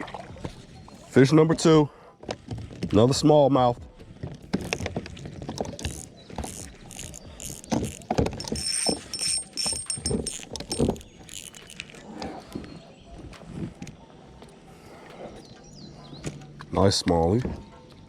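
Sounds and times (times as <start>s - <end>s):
knocks and clatter on a kayak: 1.4s - 14.6s, 16.1s - 18.0s.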